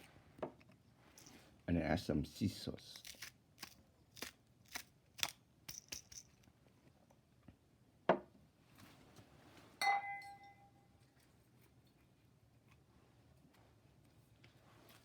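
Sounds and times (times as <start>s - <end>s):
container ringing clink: 9.8s - 10.8s.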